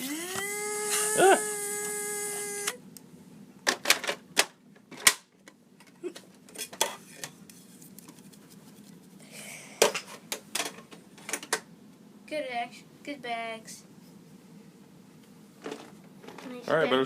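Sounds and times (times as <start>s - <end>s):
plastic parts clicking and knocking: 3.7s - 6.0s.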